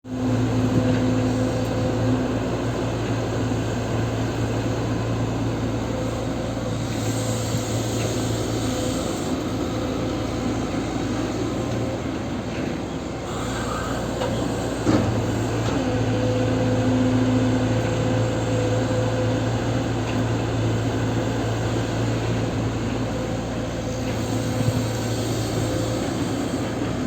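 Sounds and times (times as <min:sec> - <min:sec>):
excavator diesel engine humming: 0:00.1 - 0:27.0
hydraulic hiss: 0:06.6 - 0:10.0, 0:13.2 - 0:15.5, 0:23.8 - 0:27.0.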